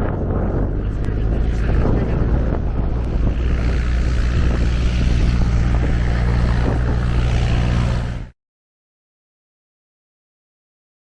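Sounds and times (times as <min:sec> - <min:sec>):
propeller aircraft engine drone: 0:00.0 - 0:08.4.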